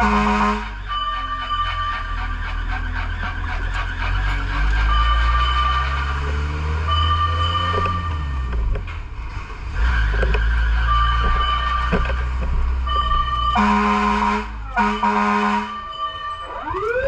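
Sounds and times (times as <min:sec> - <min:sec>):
loud horn blasts: 0:00.0 - 0:02.0, 0:13.0 - 0:15.9
fire truck engine running: 0:00.0 - 0:17.0.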